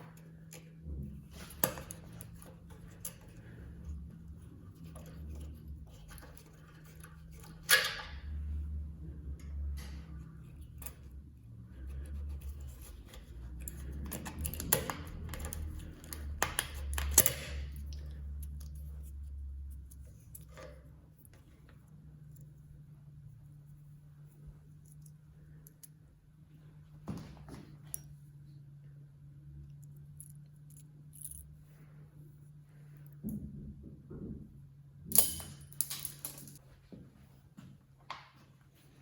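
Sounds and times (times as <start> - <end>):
low steady hum: 0.0 - 39.0
clicks and knocks of tools: 11.8 - 21.4.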